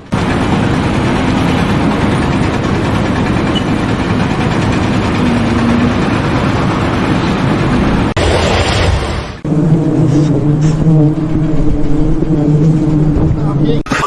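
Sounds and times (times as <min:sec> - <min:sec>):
heavy engine running: 0:00.0 - 0:09.4.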